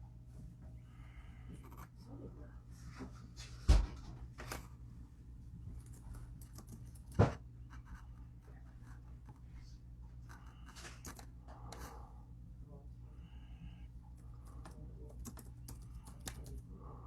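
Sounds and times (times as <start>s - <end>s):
steady low hum: 0.0s - 17.0s
scratching and rustling handling noises: 5.6s - 12.0s.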